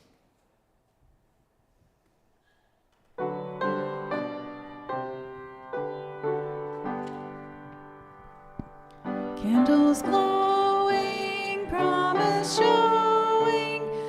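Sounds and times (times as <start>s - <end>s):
piano chords: 3.1s - 14.0s.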